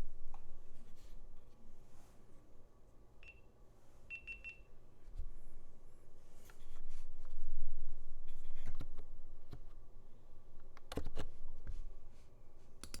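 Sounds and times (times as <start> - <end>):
soft keyboard keystrokes: 12.8 - 13.0.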